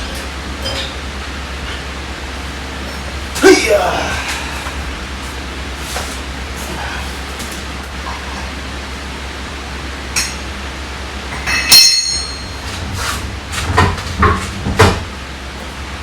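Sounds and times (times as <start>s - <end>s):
steady low hum: 0.0s - 16.0s
sharp metallic clink: 11.5s - 12.5s
dull knocks of wheel handling: 12.5s - 15.2s.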